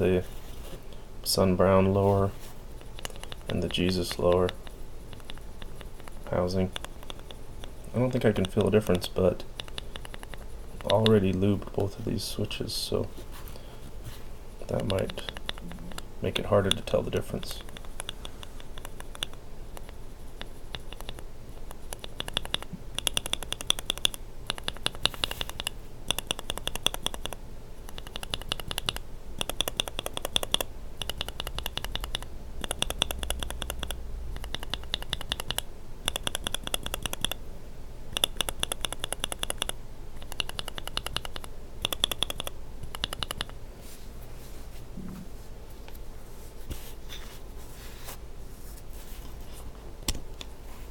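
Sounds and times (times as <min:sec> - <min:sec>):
mechanical keyboard clacking: 0:02.9 - 0:11.3, 0:14.7 - 0:21.2, 0:21.8 - 0:37.4, 0:38.1 - 0:43.6.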